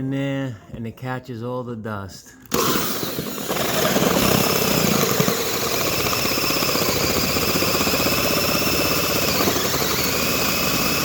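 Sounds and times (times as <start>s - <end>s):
cordless drill motor whine: 2.5s - 11.0s
hole cutter blades chattering: 2.5s - 11.0s.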